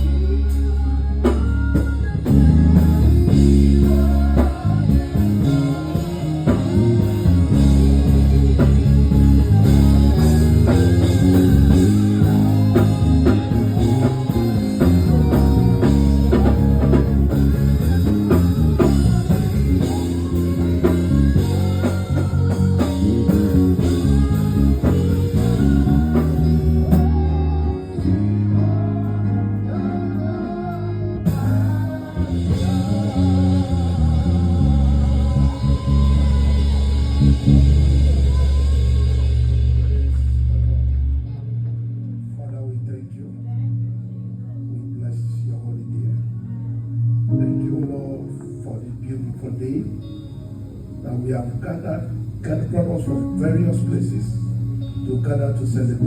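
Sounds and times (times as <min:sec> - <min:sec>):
person singing: 0:00.0 - 0:40.8
guitar music with bass: 0:00.0 - 0:56.0.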